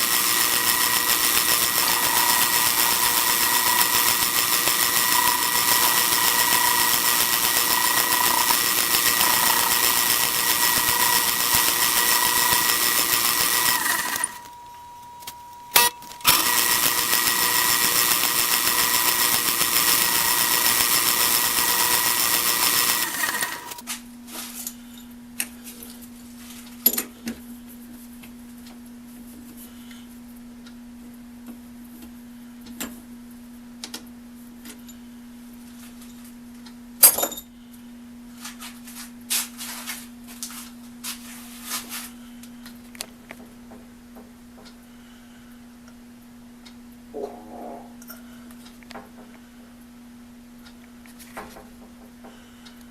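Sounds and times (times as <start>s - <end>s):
power tool whining: 0.0s - 23.8s
low steady hum: 14.3s - 16.3s, 42.2s - 52.9s.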